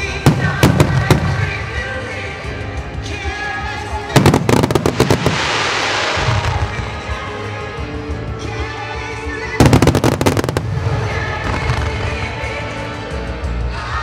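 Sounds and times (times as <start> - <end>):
background music: 0.0 - 14.0
fireworks bangs: 0.1 - 2.0, 4.1 - 7.4, 9.6 - 12.6
fireworks hiss: 4.2 - 7.4.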